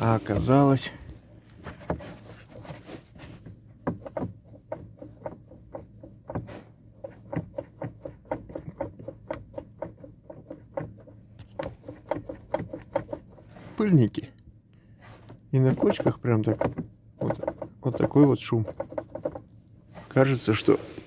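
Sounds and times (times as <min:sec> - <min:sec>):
rubber boot clicks and creaks: 0:15.2 - 0:21.0.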